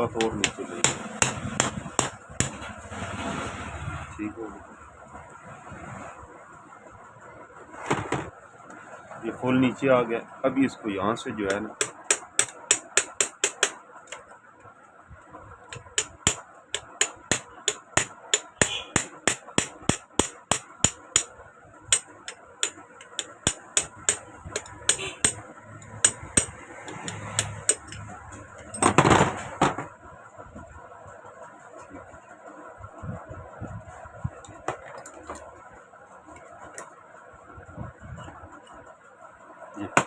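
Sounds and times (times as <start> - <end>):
hammer tapping on metal: 0.1 - 2.6, 11.5 - 14.2, 15.7 - 29.0.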